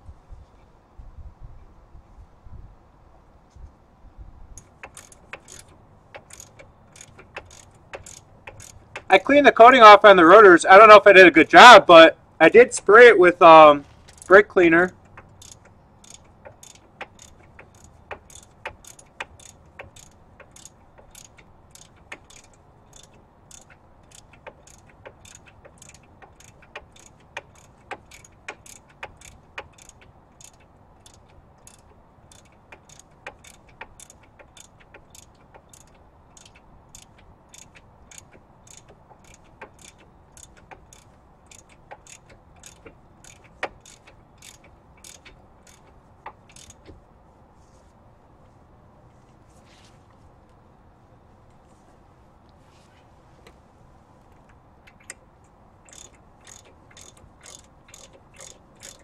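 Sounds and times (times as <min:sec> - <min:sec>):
socket ratchet clicking: 0:04.6 - 0:09.2, 0:14.0 - 0:47.0, 0:54.4 - 0:59.0.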